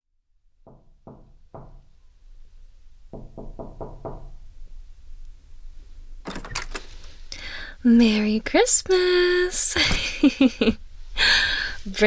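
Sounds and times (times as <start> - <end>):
knocking on a door: 0.6 - 2.0, 3.1 - 4.5.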